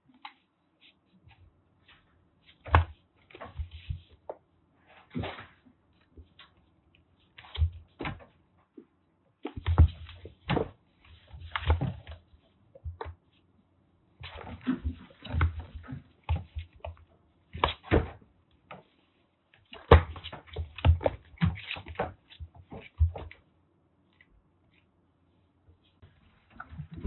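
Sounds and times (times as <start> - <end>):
kittens thumping and scuffling: 1.2 - 6.6, 7.2 - 13.4, 14.2 - 19.0, 19.6 - 23.5, 26.0 - 27.0.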